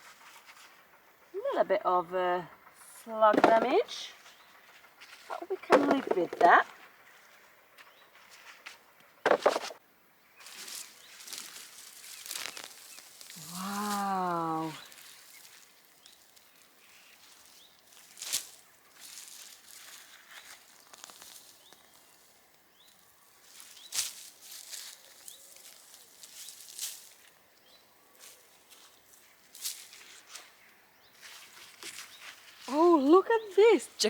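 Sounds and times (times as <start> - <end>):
soil rustling and scratching: 10.4 - 27.4, 28.2 - 30.6, 31.2 - 33.1
sharp scratchy crackles: 11.2 - 13.7.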